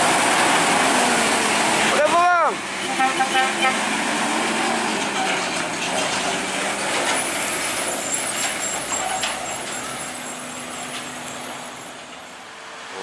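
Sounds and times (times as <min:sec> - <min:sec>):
heavy truck engine: 0:00.0 - 0:13.0.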